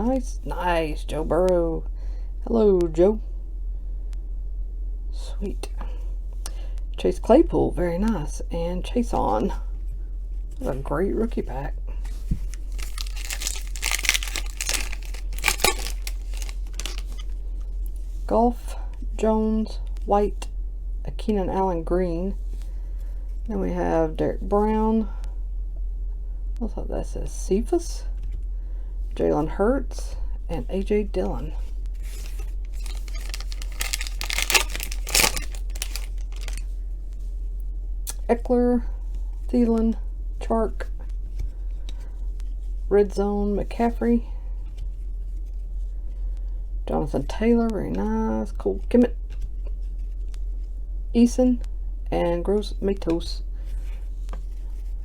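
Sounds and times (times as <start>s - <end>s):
foil wrapper tearing and crinkling: 12.1s - 17.4s, 32.0s - 36.7s.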